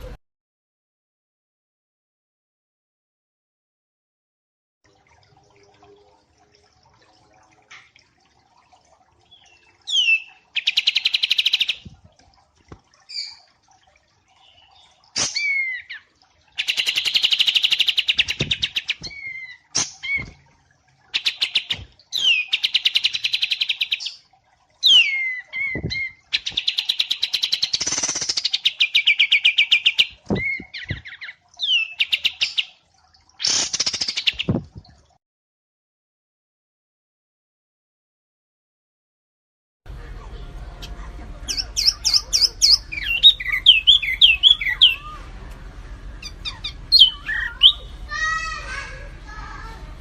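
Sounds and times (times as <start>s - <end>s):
songbirds trilling: 40.8s - 45.3s, 46.1s - 48.6s
downward whistled bird notes: 46.2s - 47.9s.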